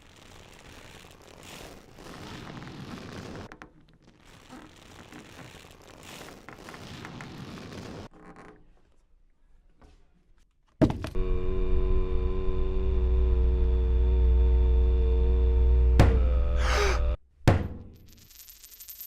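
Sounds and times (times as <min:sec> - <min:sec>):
electric appliance humming: 0:11.2 - 0:17.2.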